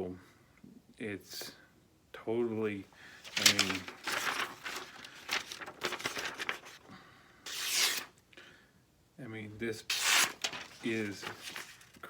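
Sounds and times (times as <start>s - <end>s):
knife slicing through paper: 3.2s - 6.8s, 7.5s - 8.1s, 9.9s - 12.0s.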